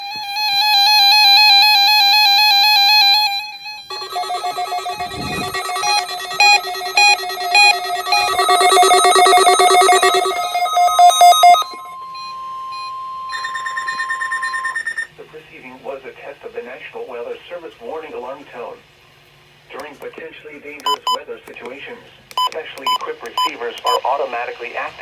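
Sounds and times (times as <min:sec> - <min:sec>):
overlapping electronic beeping: 0:03.9 - 0:15.1
steady warning alarm tone: 0:03.9 - 0:15.1
warbling siren-like alarm: 0:03.9 - 0:15.1.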